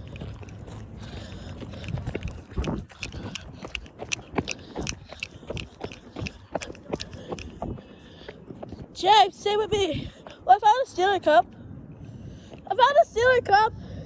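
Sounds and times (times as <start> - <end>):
footsteps crunching on rough ground: 0.0 - 8.8.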